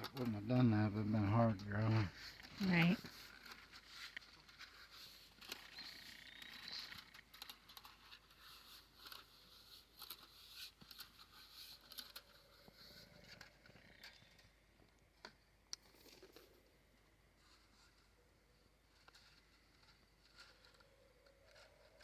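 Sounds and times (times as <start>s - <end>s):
faint clicking and rustling: 0.0s - 22.0s.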